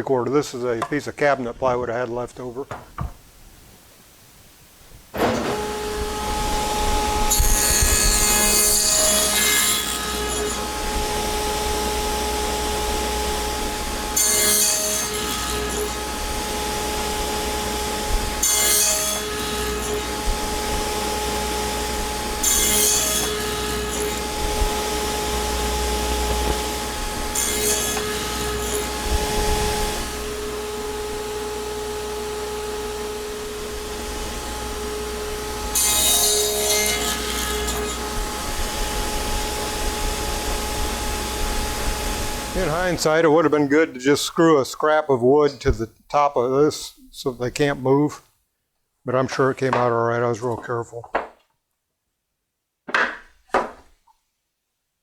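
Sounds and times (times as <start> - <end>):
saw blade cutting wood: 5.2 - 31.3, 33.4 - 43.1
table saw motor hum: 5.2 - 43.2.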